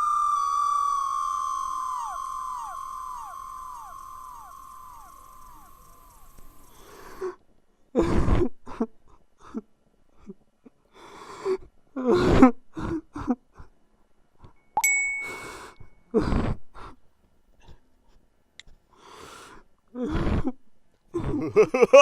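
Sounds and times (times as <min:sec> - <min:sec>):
person breathing hard: 0:03.7 - 0:07.4, 0:10.9 - 0:13.8, 0:18.9 - 0:20.5
bright ding: 0:14.8 - 0:15.8.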